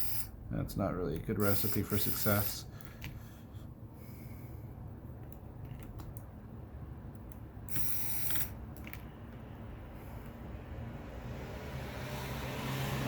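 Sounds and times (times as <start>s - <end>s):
screwdriver and tiny screws clicking: 1.1s - 3.1s.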